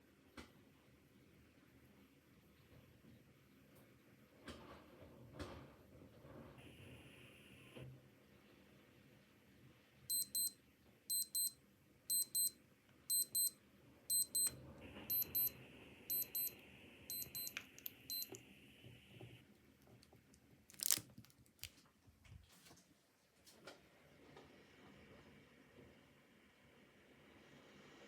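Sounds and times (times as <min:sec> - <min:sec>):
digital watch alarm beeping: 0:10.1 - 0:14.5, 0:15.1 - 0:18.3.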